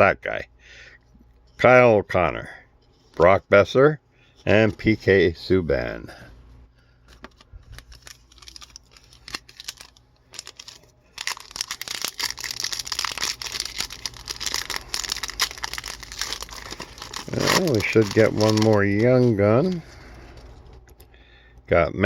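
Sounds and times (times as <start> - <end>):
wrapper crinkling and tearing: 7.1 - 20.8.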